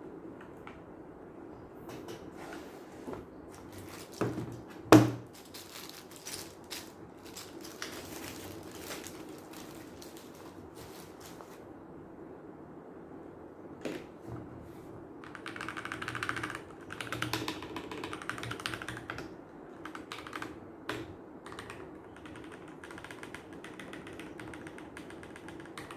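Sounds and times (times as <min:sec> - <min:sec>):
plastic wrap crinkling: 0:03.6 - 0:04.4, 0:05.3 - 0:11.6.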